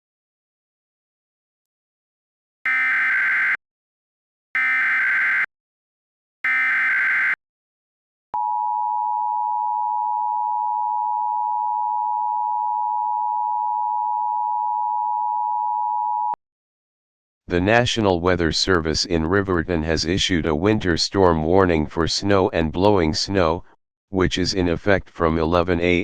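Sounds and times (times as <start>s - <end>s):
harsh digital warble: 2.7s - 3.6s, 4.6s - 5.5s, 6.4s - 7.4s
two-tone attention signal: 6.5s - 7.4s.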